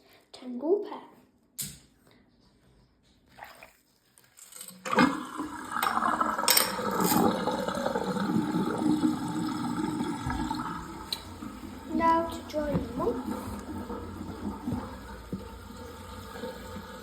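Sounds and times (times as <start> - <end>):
tap water splashing into basin: 3.3 - 3.9, 4.9 - 17.0.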